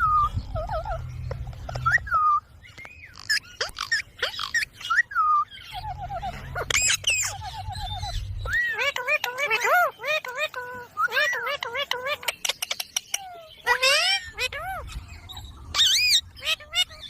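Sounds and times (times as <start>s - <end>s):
parrot chirps and whistles: 3.1s - 10.1s, 12.2s - 17.0s.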